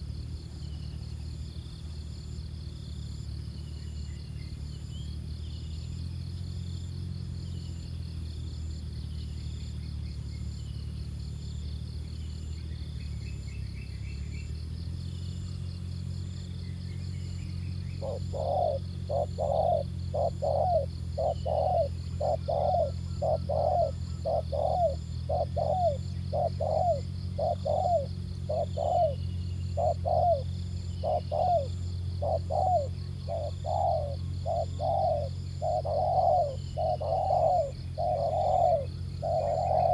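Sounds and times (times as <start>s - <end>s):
faint high insect buzz: 0.0s - 39.9s
steady low hum: 0.0s - 39.9s
dove cooing: 17.9s - 39.9s.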